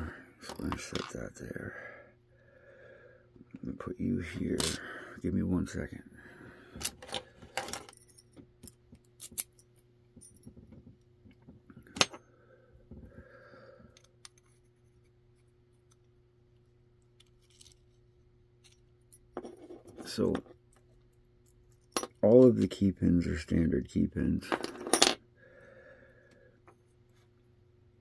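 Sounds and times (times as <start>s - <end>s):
small metal parts clicking: 6.8s - 10.5s, 13.9s - 16.1s, 17.0s - 18.0s.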